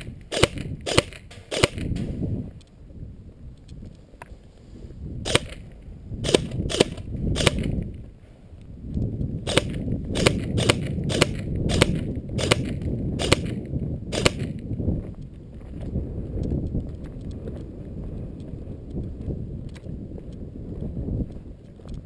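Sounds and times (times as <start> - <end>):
airsoft gun shots: 0.0 - 2.2, 5.2 - 7.8, 9.5 - 14.6.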